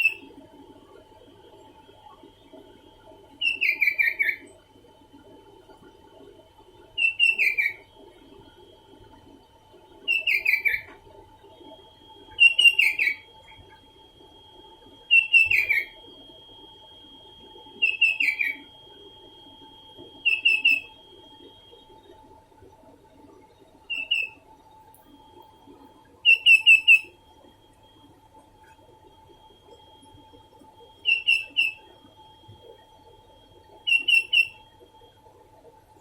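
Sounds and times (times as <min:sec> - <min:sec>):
bird whistling song: 0:00.0 - 0:00.2, 0:03.4 - 0:04.5, 0:07.0 - 0:07.9, 0:10.1 - 0:10.9, 0:12.3 - 0:13.7, 0:15.1 - 0:16.0, 0:17.8 - 0:18.8, 0:20.2 - 0:21.0, 0:23.8 - 0:24.4, 0:26.2 - 0:27.2, 0:31.0 - 0:32.0, 0:33.8 - 0:34.8
faint steady hum: 0:00.0 - 0:36.0.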